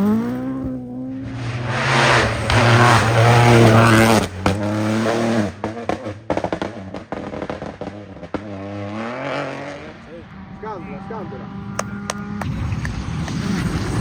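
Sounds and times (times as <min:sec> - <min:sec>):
rally car engine at full throttle: 0:00.0 - 0:14.0
exhaust pops and cracks: 0:02.2 - 0:04.8, 0:05.5 - 0:08.6.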